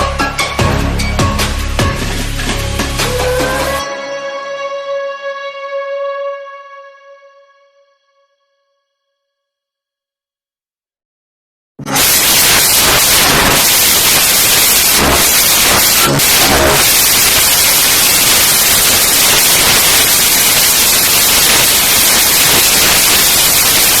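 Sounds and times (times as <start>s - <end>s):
loud static white noise: 11.9s - 24.0s.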